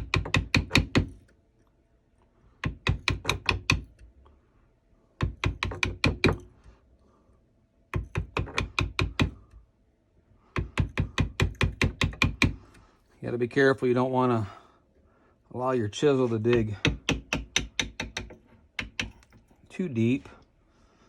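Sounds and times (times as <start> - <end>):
chisel tapping wood: 0.0 - 1.2, 2.6 - 4.0, 5.2 - 6.5, 7.9 - 9.4, 10.6 - 12.6, 16.5 - 19.4.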